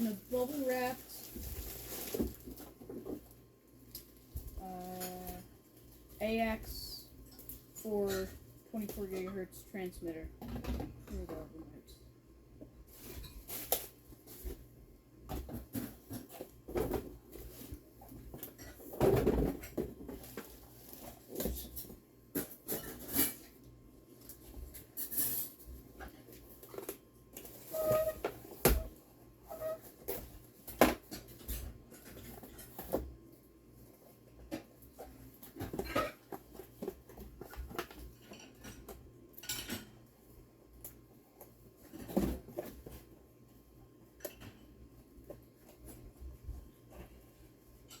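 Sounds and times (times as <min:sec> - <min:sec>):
plastic and cardboard packaging rustling: 0:00.0 - 0:07.8, 0:12.8 - 0:38.4.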